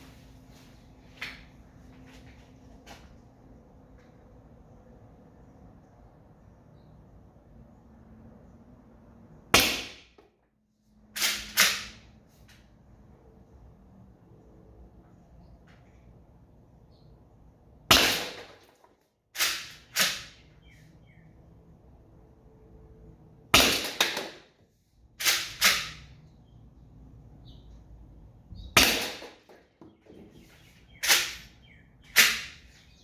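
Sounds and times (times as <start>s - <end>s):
launcher firing sharp cracks: 9.5s - 10.3s, 11.2s - 12.1s, 17.9s - 20.5s, 23.5s - 24.6s, 25.2s - 26.1s, 28.7s - 29.7s, 31.0s - 31.5s, 32.1s - 32.7s.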